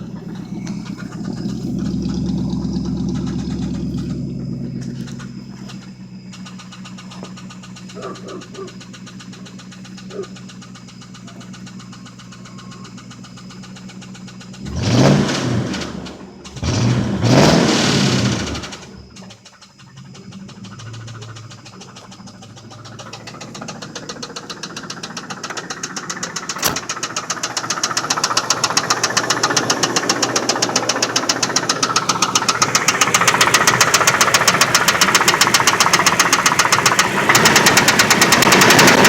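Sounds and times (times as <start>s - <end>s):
car engine idling with knock: 0.0s - 39.0s
car engine revving: 0.0s - 39.0s.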